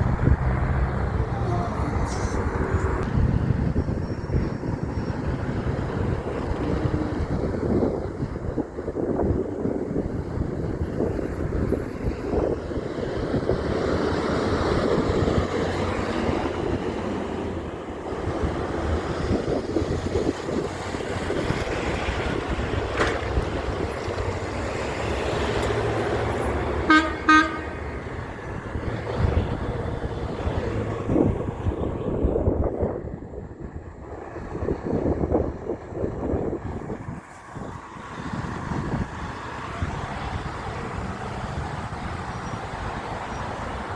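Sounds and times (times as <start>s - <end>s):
heavy truck engine: 0.0s - 43.9s
traffic rumble: 0.0s - 43.9s
wind on microphone: 0.0s - 43.9s
truck horn blasts: 26.8s - 28.0s.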